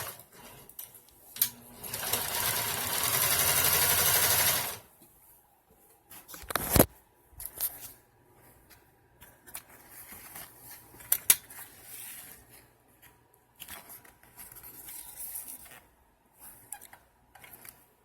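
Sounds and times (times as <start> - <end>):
fabric rustling and handling: 4.9 - 18.0.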